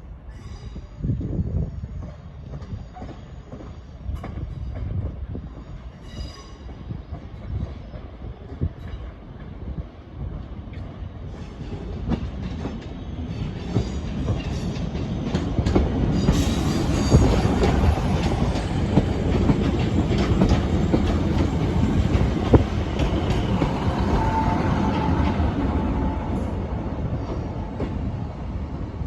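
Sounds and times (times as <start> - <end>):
train rumbling: 0.0 - 29.0
wheels clicking over rail joints: 17.4 - 24.0.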